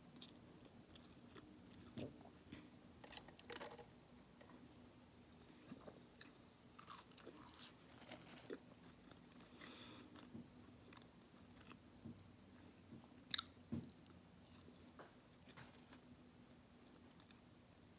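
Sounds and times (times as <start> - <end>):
person chewing food: 0.2 - 3.3, 5.7 - 16.0, 16.8 - 17.5
food crunching: 5.8 - 11.8, 13.3 - 16.0.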